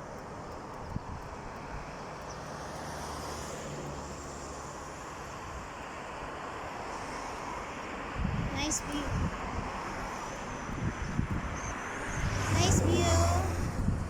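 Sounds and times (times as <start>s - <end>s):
outdoor background noise: 0.0s - 14.0s
low engine-like hum: 12.2s - 14.0s.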